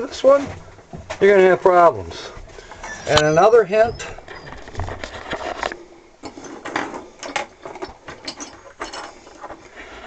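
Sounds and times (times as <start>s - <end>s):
objects clicking and knocking: 4.2s - 9.6s.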